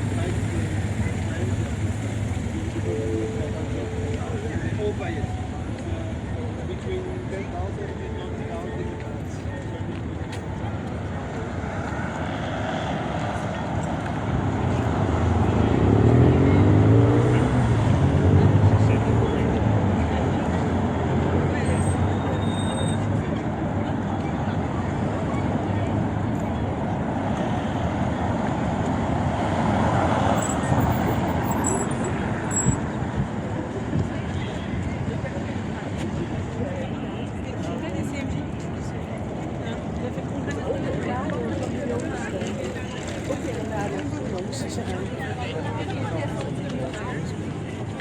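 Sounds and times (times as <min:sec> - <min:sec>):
city traffic passing: 0:00.0 - 0:48.0
street noise: 0:00.0 - 0:48.0
vehicle engine passing by: 0:11.6 - 0:22.1.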